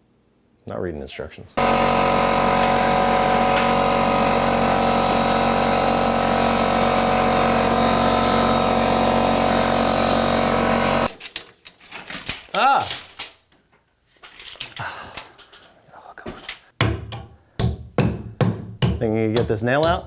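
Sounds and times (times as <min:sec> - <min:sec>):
power tool motor running: 0:01.6 - 0:11.1.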